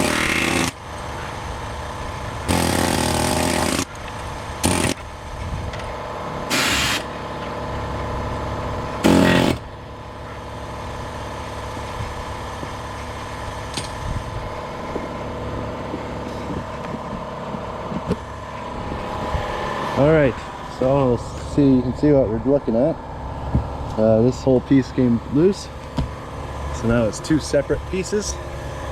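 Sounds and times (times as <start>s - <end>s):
pneumatic air hammer: 0.0s - 7.6s, 8.9s - 9.7s, 11.0s - 14.3s
motor running steadily: 0.0s - 28.9s.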